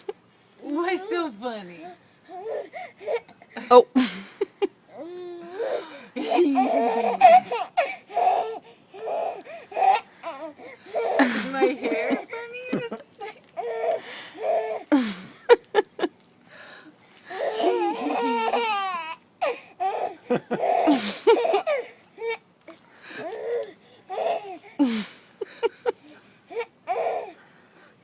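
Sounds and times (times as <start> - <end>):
baby giggling: 6.2 - 10.4, 17.4 - 19.1, 19.8 - 21.9.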